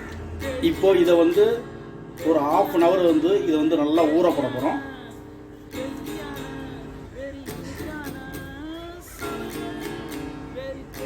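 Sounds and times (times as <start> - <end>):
acoustic guitar music: 0.0 - 11.0.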